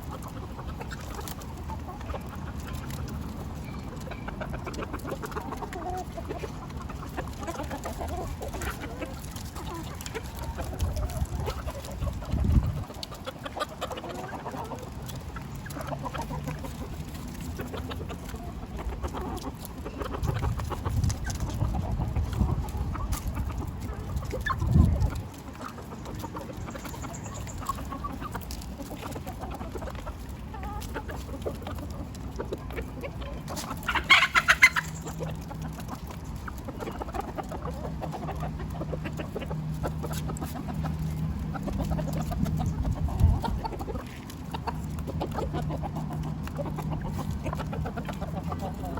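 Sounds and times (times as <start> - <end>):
chickens clucking: 0.0 - 48.9.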